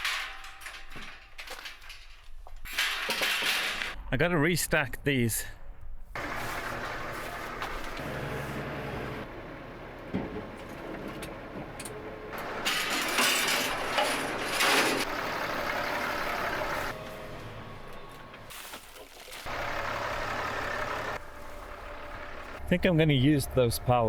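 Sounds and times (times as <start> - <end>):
tractor engine running: 6.2 - 24.0.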